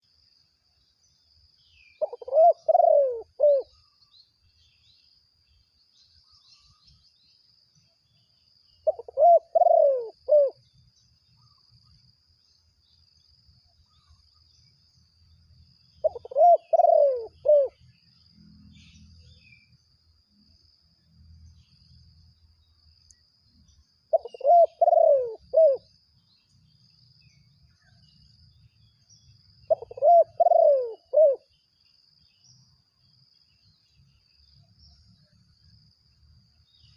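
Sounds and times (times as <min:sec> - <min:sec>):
dove cooing: 0:02.0 - 0:03.8, 0:08.8 - 0:10.6, 0:16.0 - 0:17.8, 0:24.1 - 0:25.9, 0:29.7 - 0:31.5.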